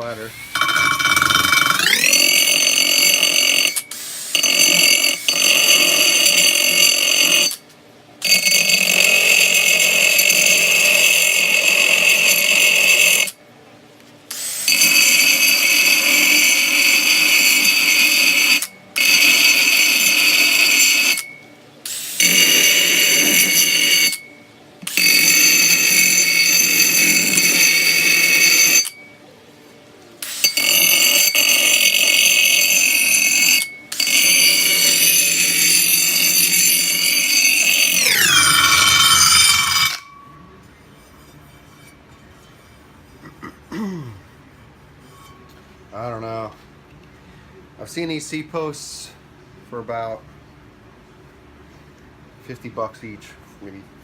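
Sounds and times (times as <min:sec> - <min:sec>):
grinding wheel on metal: 0:00.0 - 0:07.6, 0:08.2 - 0:13.4, 0:14.3 - 0:29.1, 0:30.2 - 0:43.2.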